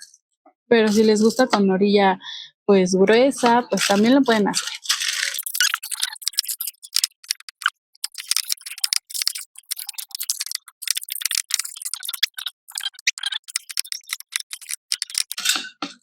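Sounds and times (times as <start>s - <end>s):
aluminium foil crinkling: 3.6s - 15.6s.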